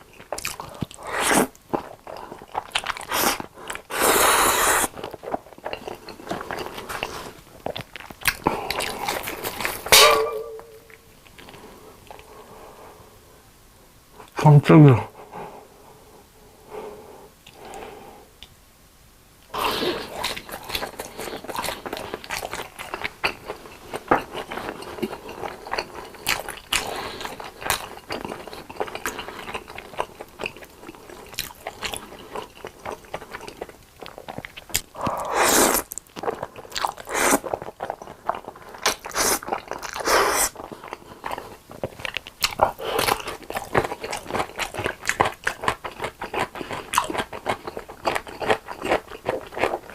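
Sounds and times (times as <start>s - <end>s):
crunchy chewing and bites: 19.5s - 49.9s.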